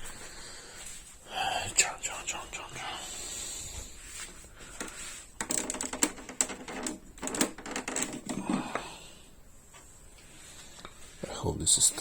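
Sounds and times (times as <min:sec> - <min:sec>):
small clicks and clatters: 0:04.8 - 0:08.4.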